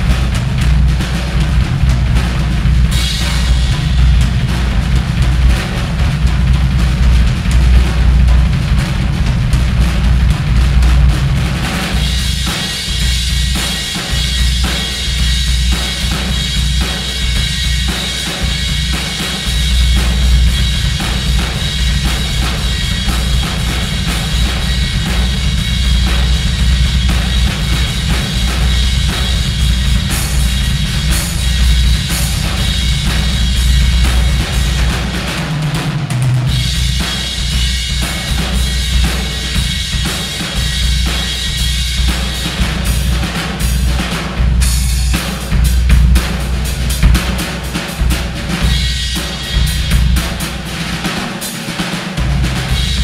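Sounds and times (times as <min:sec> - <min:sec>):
bass drum: 0:00.0 - 0:53.0
cymbal wash: 0:10.3 - 0:53.0
snare drum: 0:38.0 - 0:53.0.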